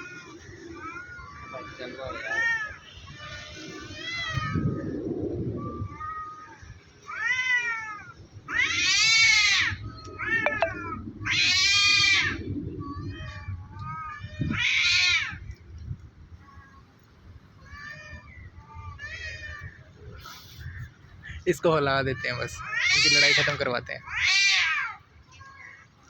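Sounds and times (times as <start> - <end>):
cats yowling: 5.8 - 10.6, 22.0 - 25.8.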